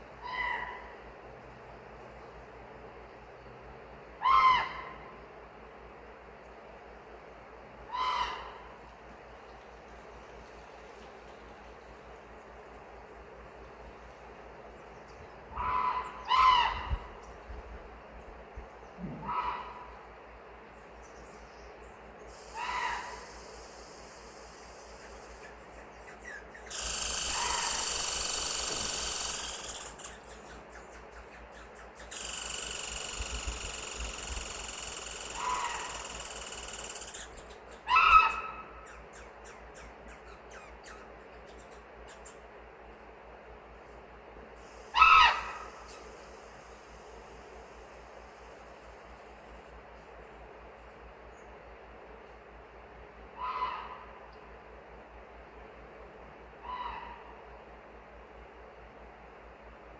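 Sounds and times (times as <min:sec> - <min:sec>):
raven calls: 0:00.2 - 0:01.0, 0:04.2 - 0:05.1, 0:07.9 - 0:08.9, 0:15.5 - 0:17.4, 0:19.0 - 0:20.1, 0:22.3 - 0:42.4, 0:44.6 - 0:47.2, 0:53.3 - 0:54.3, 0:56.6 - 0:57.5
loud short bird call: 0:15.6 - 0:17.1, 0:44.9 - 0:46.0, 0:53.4 - 0:54.2
steady rushing hiss: 0:22.1 - 0:25.6, 0:26.7 - 0:30.7, 0:32.0 - 0:37.2, 0:45.6 - 0:51.2
high bird chirps: 0:26.1 - 0:37.8.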